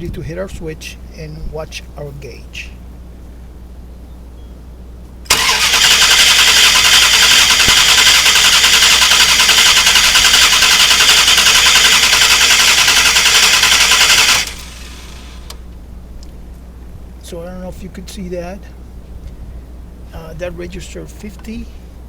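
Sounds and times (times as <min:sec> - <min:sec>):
car engine cranking on starter: 0:05.3 - 0:15.7.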